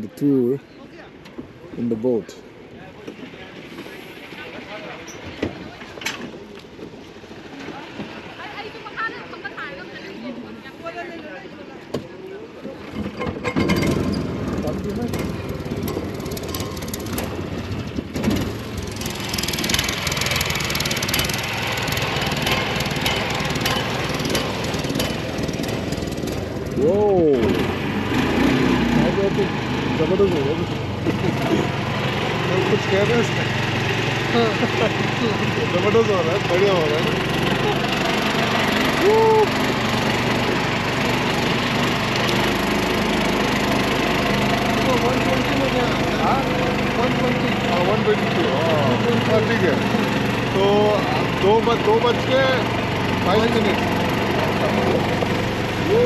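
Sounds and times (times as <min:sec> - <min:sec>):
small motorboat engine: 0:02.1 - 0:56.0
person exclaiming: 0:39.0 - 0:39.6, 0:55.8 - 0:56.0.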